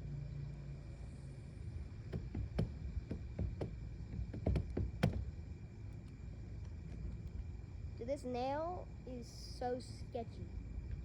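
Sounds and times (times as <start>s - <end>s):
low steady rumble: 0.0s - 11.0s
light knocks and clicks: 2.1s - 5.3s.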